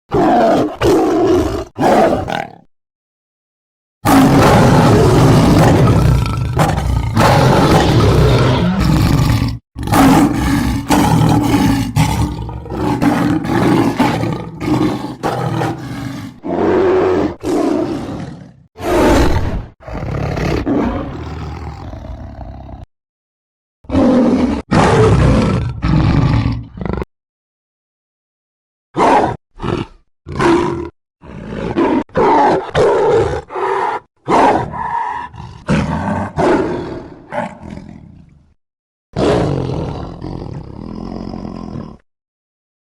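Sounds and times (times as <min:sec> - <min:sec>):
big cat roaring: 0:00.1 - 0:02.7, 0:04.1 - 0:22.9, 0:23.9 - 0:27.1, 0:29.6 - 0:32.0, 0:33.3 - 0:38.2, 0:39.2 - 0:42.0
short growling calls: 0:01.8 - 0:02.7.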